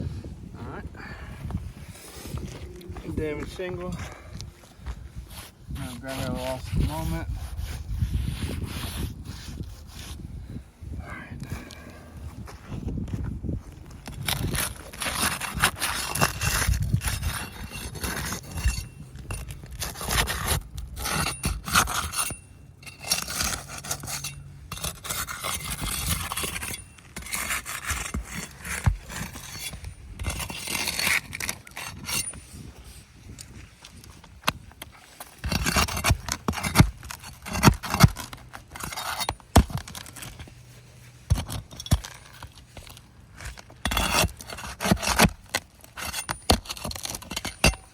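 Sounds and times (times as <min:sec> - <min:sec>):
shingles scraping and rubbing: 0:13.7 - 0:47.9.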